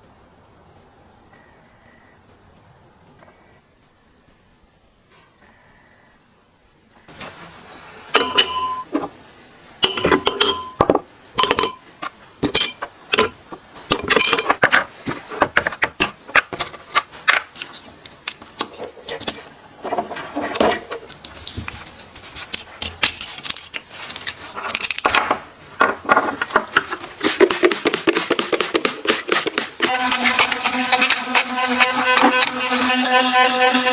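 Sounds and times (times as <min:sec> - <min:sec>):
metal parts and tools clinking: 0:08.1 - 0:08.9, 0:09.8 - 0:11.8, 0:12.4 - 0:14.8.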